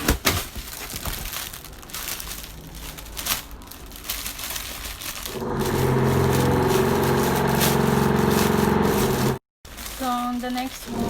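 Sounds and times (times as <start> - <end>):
packaging crinkling: 0.0 - 11.0
low engine-like hum: 1.2 - 9.4.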